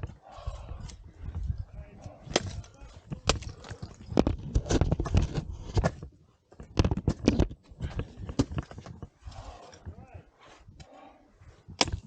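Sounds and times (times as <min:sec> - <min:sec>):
ice axes striking ice: 0:02.3 - 0:05.3, 0:11.7 - 0:12.0.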